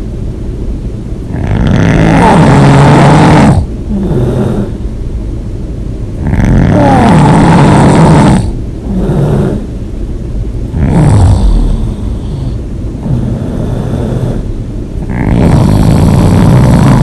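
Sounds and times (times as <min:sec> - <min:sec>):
person snoring loudly: 0:01.3 - 0:04.8, 0:06.2 - 0:09.7, 0:10.7 - 0:17.0.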